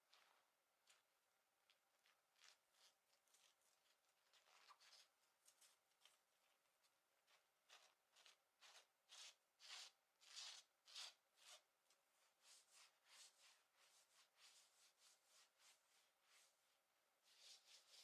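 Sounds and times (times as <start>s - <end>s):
fingernails scratching fabric: 7.3s - 11.6s, 17.3s - 18.0s.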